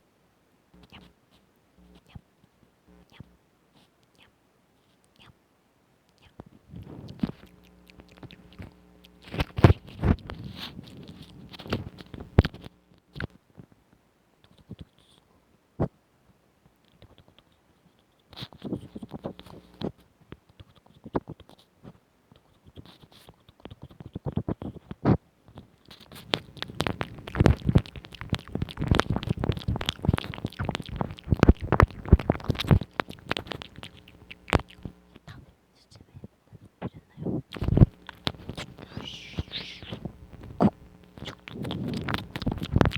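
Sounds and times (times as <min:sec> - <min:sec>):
wet mouth clicks and smacks: 0:06.2 - 0:13.3, 0:25.9 - 0:35.3, 0:37.2 - 0:42.9.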